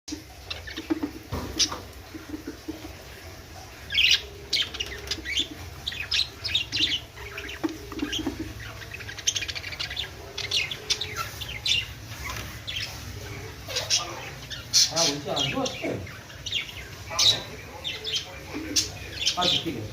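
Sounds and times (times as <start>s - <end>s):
budgerigars chirping: 0.1s - 19.9s.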